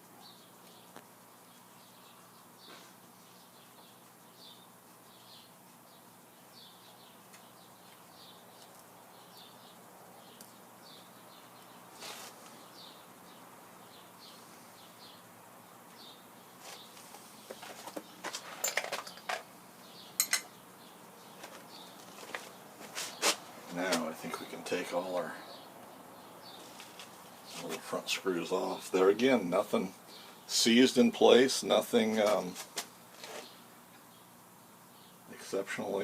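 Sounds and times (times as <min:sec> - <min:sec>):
metal tools clicking and knocking: 0:18.5 - 0:19.5, 0:20.2 - 0:20.5.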